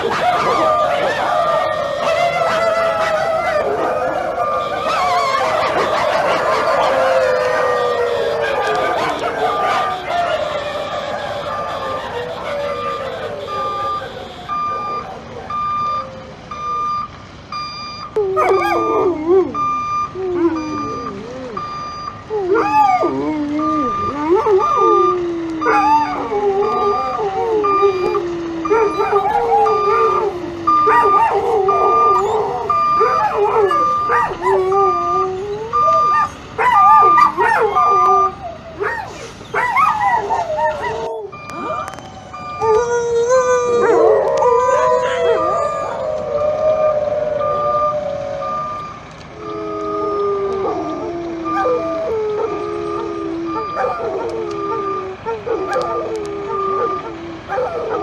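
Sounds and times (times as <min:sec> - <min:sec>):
canines howling: 0:00.0 - 0:16.8, 0:18.2 - 0:58.0
vehicle reversing alarm beeping: 0:00.0 - 0:58.0.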